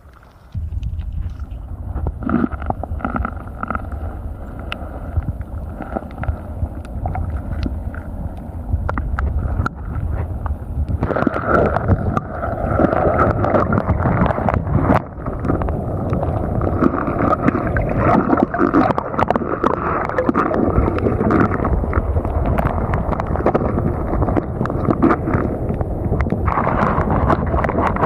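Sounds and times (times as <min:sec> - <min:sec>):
wind buffeting microphone: 0:00.0 - 0:19.4
water sloshing and gurgling: 0:00.0 - 0:28.0.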